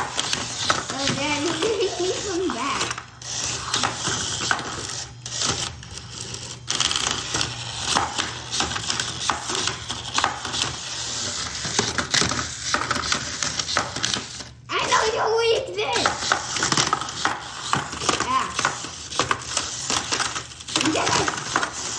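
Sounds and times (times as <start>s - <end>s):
toy robots clattering: 0.0s - 11.7s, 15.8s - 21.9s.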